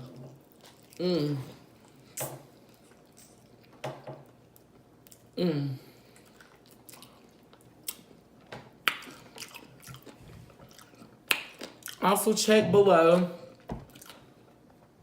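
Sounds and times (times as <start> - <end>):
chewing and lip-smacking: 0.4 - 1.0, 6.1 - 8.2, 8.8 - 12.0, 13.5 - 14.8.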